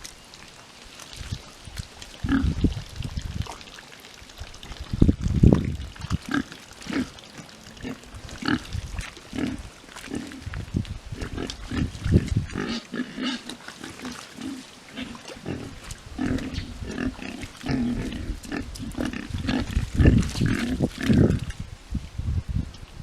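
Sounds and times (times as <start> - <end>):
pigs grunting: 2.2 - 2.7, 6.0 - 21.5.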